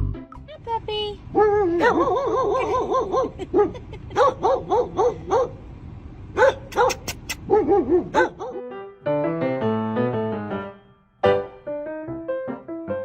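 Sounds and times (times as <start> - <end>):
dog yipping: 1.4 - 5.6, 6.4 - 8.6.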